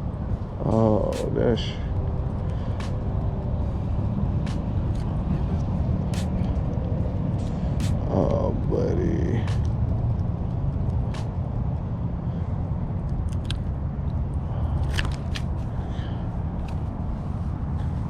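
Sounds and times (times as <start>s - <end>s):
wind rumble on microphone: 0.0s - 18.0s
clicks and scrapes unhooking fish: 13.0s - 15.7s.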